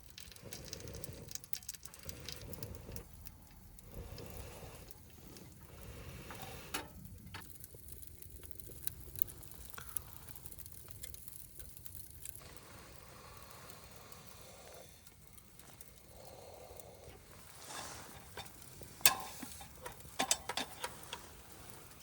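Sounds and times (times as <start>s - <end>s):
sharp pops from fire: 0.0s - 14.3s, 17.1s - 22.0s
wood fire crackling: 0.0s - 22.0s.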